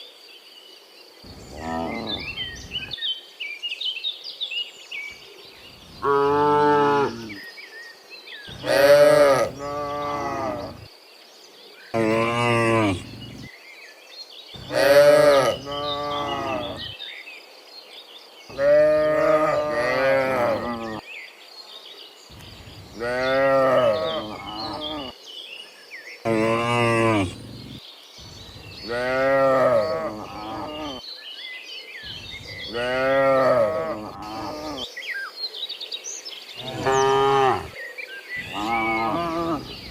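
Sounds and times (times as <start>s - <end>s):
cattle mooing: 1.5s - 2.5s, 8.5s - 10.8s, 12.0s - 13.5s, 14.6s - 16.9s, 18.5s - 21.0s, 23.0s - 25.1s, 26.3s - 27.8s, 28.9s - 31.0s, 32.7s - 34.8s, 36.6s - 37.8s, 38.5s - 39.9s.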